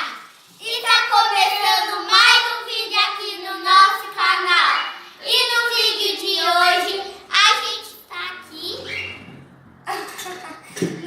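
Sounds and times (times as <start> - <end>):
children singing: 0.6 - 7.7.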